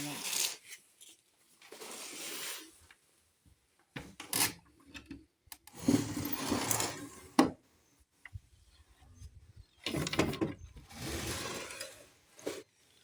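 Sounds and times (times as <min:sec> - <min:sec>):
rubbing and scraping handling noise: 0:00.0 - 0:03.1, 0:09.2 - 0:13.0.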